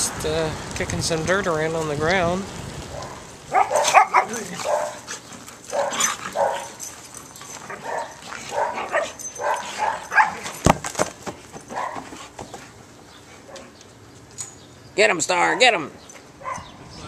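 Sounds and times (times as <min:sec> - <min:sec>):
dog barking and yipping: 0:02.9 - 0:10.6, 0:11.6 - 0:12.4, 0:15.4 - 0:16.8.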